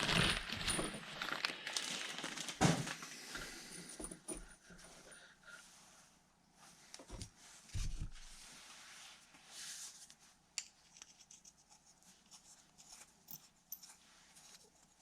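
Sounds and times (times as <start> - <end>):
soft rustle: 4.7 - 15.0.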